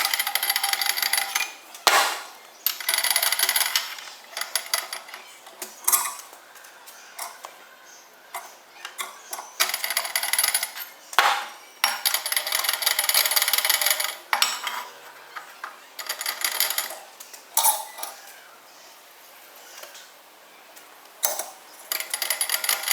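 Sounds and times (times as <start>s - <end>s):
metal parts clinking and rattling: 0.0s - 6.4s, 7.2s - 7.5s, 8.3s - 18.2s, 21.2s - 22.9s.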